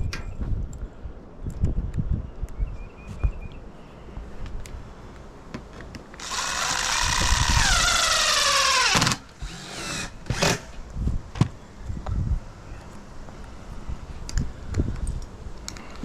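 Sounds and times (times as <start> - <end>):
power drill running: 6.2 - 10.7.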